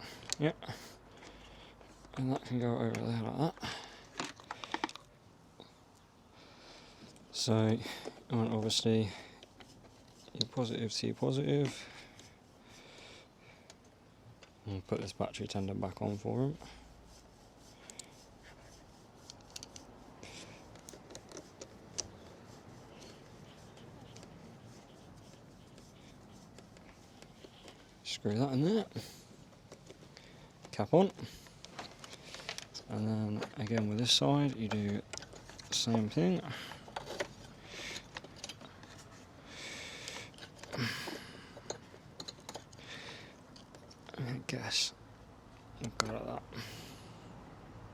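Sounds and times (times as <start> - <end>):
soft rustling and scraping: 0.0 - 46.5
hands fitting battery leads: 17.7 - 18.2, 19.2 - 44.1.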